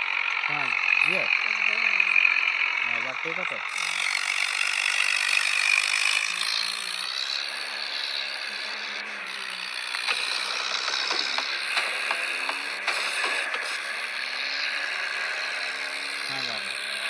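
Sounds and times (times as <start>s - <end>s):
diesel engine running: 0.0s - 17.0s
clicks and rattles: 9.8s - 13.7s.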